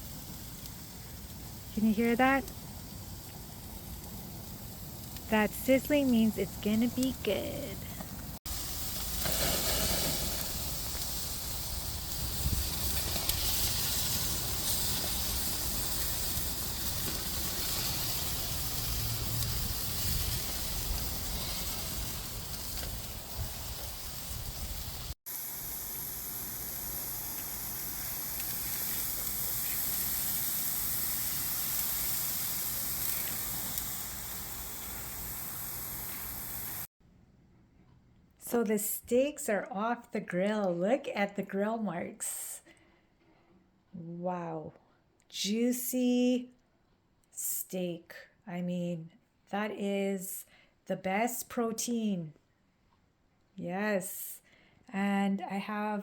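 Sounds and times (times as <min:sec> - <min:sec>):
steaks sizzling on a grill: 0:00.0 - 0:07.3, 0:08.1 - 0:36.9.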